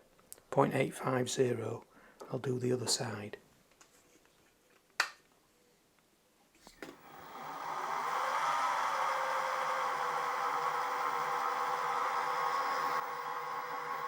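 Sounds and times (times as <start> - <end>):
milling machine motor whine: 6.9 - 14.0.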